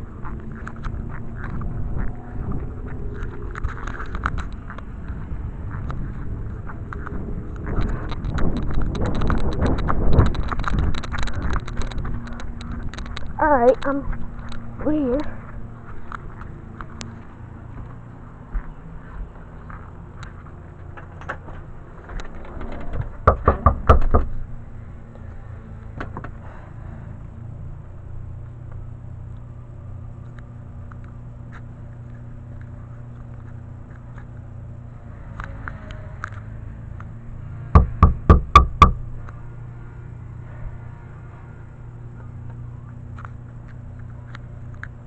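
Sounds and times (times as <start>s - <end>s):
knuckles knocking on a door: 23.3s - 24.3s, 37.8s - 39.0s.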